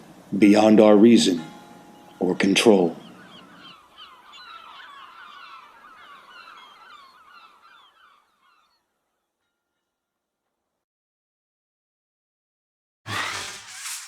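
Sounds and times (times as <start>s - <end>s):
flock of birds calling: 1.4s - 8.8s.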